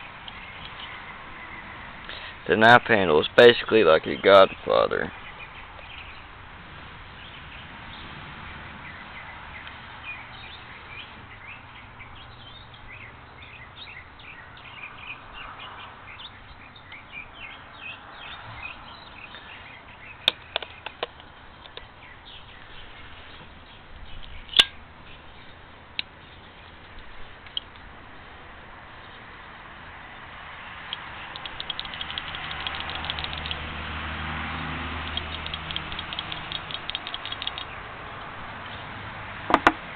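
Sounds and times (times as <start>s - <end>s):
small birds chirping: 0.0s - 33.8s, 35.0s - 38.9s
sharp clicks: 30.9s - 33.7s, 35.0s - 37.7s.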